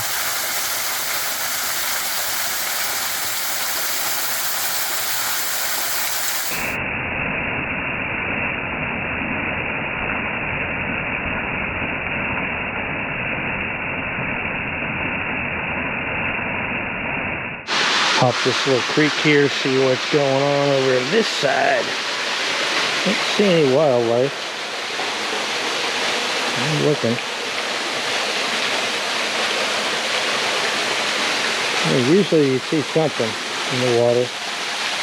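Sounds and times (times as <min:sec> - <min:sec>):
waterfall roaring: 0:00.0 - 0:06.8, 0:17.7 - 0:35.0.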